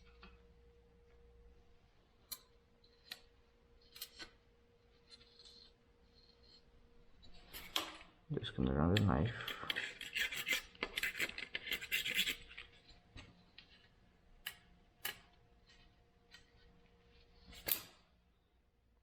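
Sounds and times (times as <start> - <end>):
knife scraping metal frame: 3.8 - 8.1, 9.0 - 13.0.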